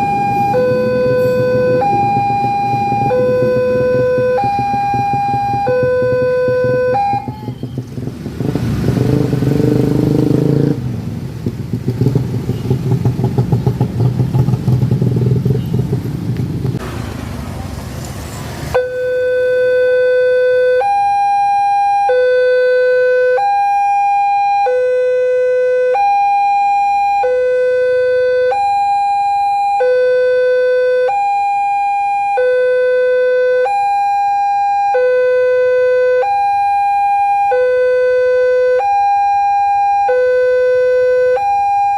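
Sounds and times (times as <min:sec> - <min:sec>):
level crossing warning siren: 0:00.0 - 0:10.8, 0:18.7 - 0:41.9
train passing: 0:13.0 - 0:18.8.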